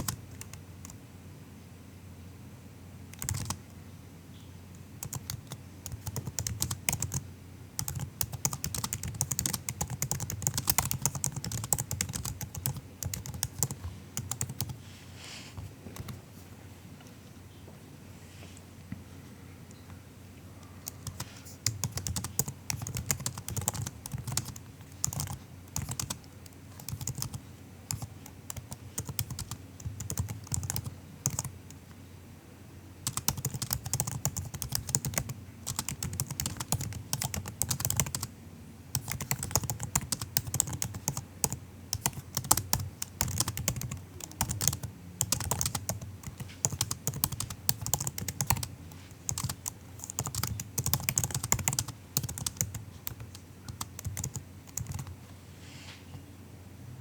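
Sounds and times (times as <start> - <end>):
laptop keyboard typing: 0.0 - 1.0, 3.1 - 3.6, 5.0 - 7.2, 7.8 - 14.8, 16.0 - 16.2, 20.8 - 31.8, 33.0 - 38.3, 38.9 - 55.2.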